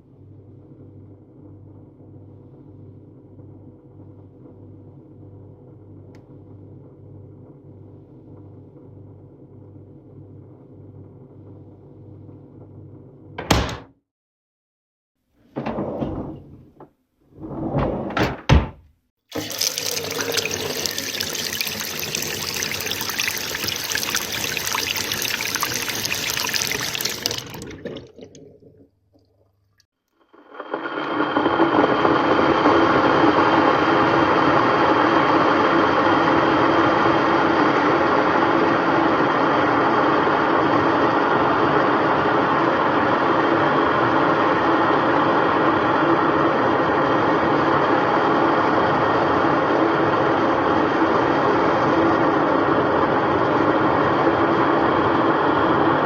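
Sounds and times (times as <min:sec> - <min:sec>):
appliance hum: 0:00.1 - 0:13.8, 0:19.3 - 0:29.0
water running from a tap: 0:19.3 - 0:28.4.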